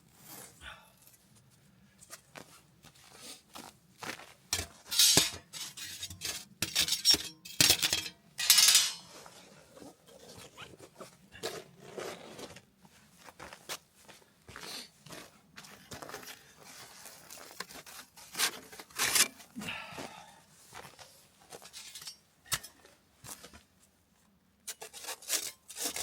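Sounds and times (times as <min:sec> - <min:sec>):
rustling or scraping bursts: 0:04.6 - 0:07.1
objects clinking and knocking: 0:04.6 - 0:09.1.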